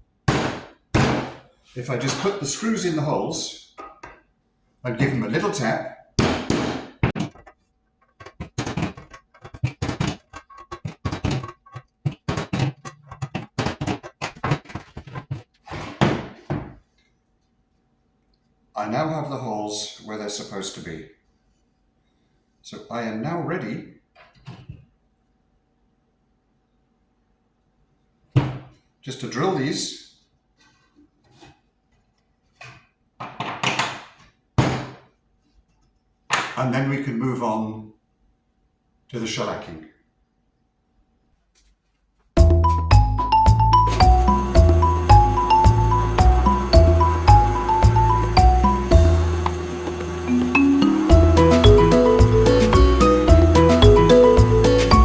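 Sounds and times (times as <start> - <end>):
sharp wooden thunk: 0.3 - 1.4, 6.2 - 7.4
wooden boards knocking and rubbing: 6.2 - 16.8.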